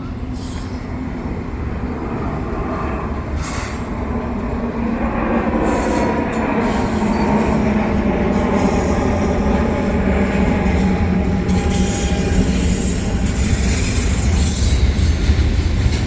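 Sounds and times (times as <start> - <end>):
train wheels rumbling on rail: 0.0 - 16.0
wheel squeal: 5.6 - 16.0.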